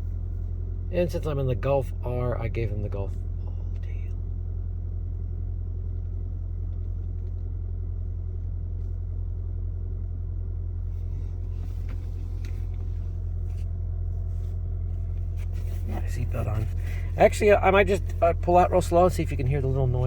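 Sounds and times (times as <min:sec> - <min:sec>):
car engine idling: 0:00.0 - 0:20.0
light clicks and rustles: 0:10.9 - 0:16.8.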